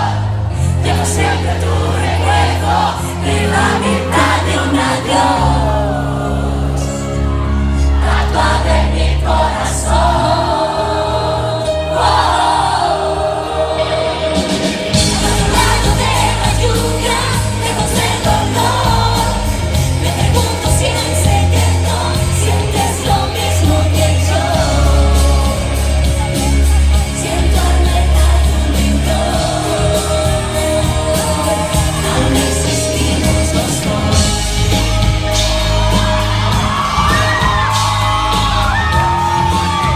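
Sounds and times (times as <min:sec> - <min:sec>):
bass line: 0:00.0 - 0:39.9
crowd: 0:00.0 - 0:39.9
live pop band playing: 0:00.0 - 0:39.9
woman singing: 0:00.7 - 0:07.2, 0:09.9 - 0:39.9
drum beat: 0:14.4 - 0:39.9.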